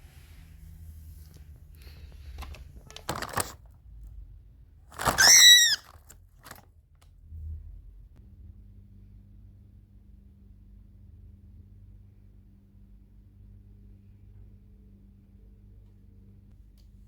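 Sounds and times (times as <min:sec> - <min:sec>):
rustling and scratching: 0:01.0 - 0:03.7, 0:04.9 - 0:06.6
cockatiel call: 0:05.1 - 0:05.8.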